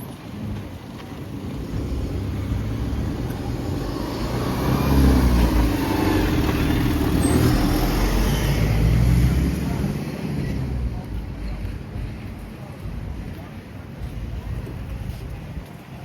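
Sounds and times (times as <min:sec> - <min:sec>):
vehicle passing by: 0:01.5 - 0:11.1.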